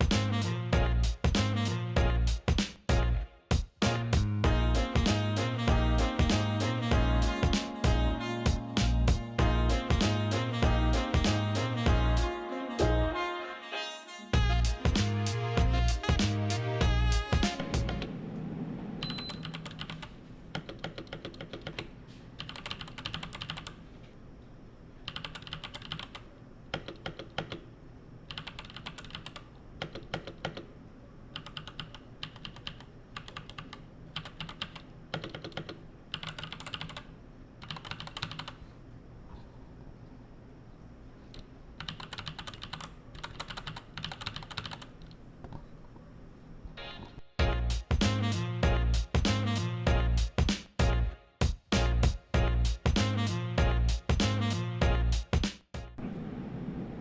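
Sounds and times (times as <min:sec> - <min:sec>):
mechanical keyboard typing: 0:19.2 - 0:23.8, 0:25.1 - 0:27.7, 0:28.3 - 0:30.7, 0:31.3 - 0:38.6, 0:41.8 - 0:45.2.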